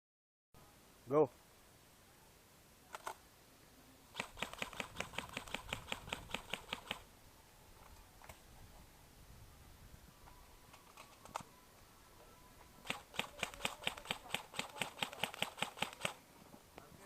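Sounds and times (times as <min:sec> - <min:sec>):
airsoft gun shots: 0:04.1 - 0:07.0, 0:12.8 - 0:16.2
scattered clicks: 0:04.2 - 0:07.0, 0:12.8 - 0:16.2.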